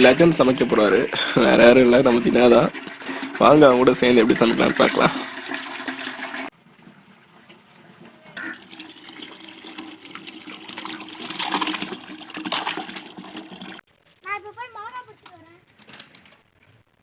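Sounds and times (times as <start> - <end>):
water running and splashing: 0.0 - 13.8.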